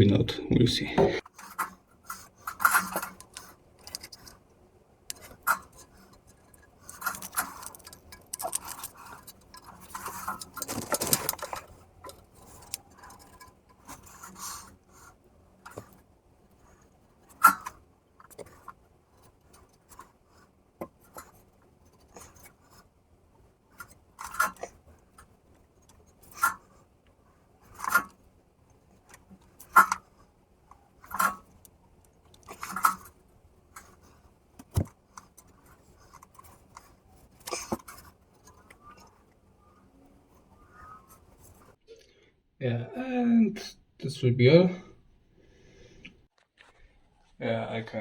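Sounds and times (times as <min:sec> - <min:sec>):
tool scraping clicks: 0:01.2 - 0:04.5, 0:05.1 - 0:22.9.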